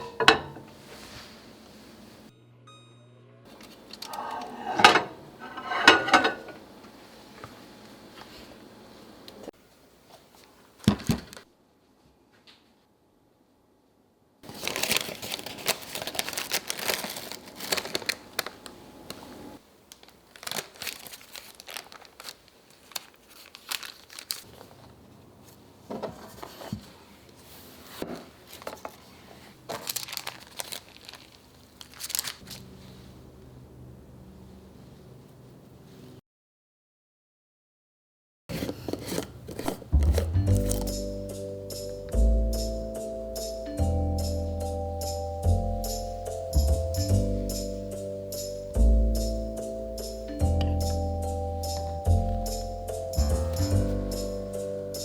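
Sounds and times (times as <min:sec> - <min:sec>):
crinkly packaging crumpling: 0:14.4 - 0:25.0, 0:28.2 - 0:32.7, 0:38.5 - 0:41.0.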